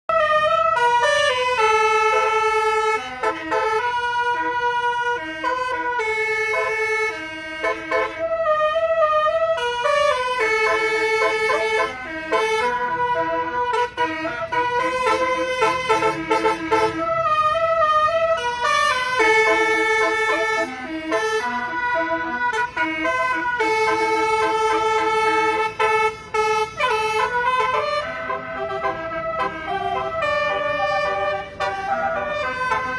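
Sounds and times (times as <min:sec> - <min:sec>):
multi-tone bus horn melody: 0:00.1 - 0:32.9.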